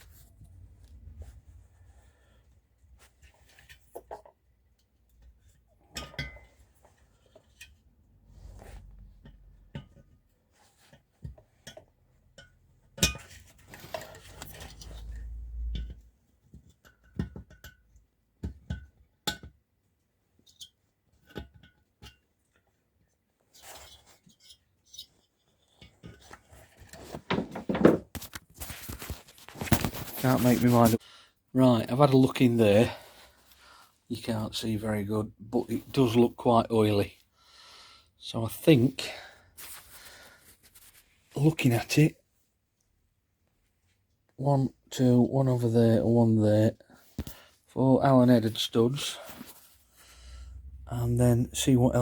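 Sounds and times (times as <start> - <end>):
clinks of hand tools and metal: 5.9 - 6.6.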